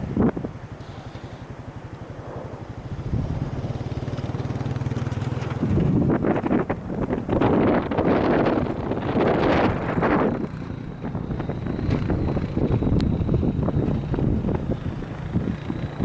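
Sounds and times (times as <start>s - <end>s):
wind buffeting microphone: 0.0s - 0.8s, 1.5s - 16.0s
steady hum: 0.0s - 4.8s
fast low pulsing: 0.0s - 16.0s.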